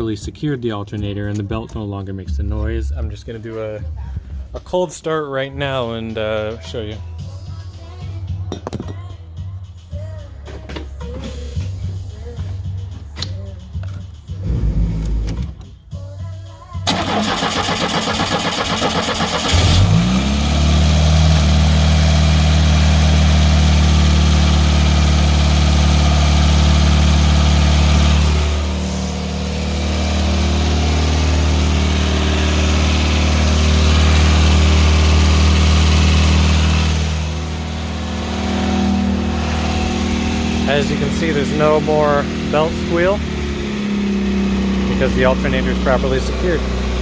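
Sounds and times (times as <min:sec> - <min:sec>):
car engine idling: 0:16.8 - 0:47.0
starter motor cranking: 0:16.9 - 0:20.1.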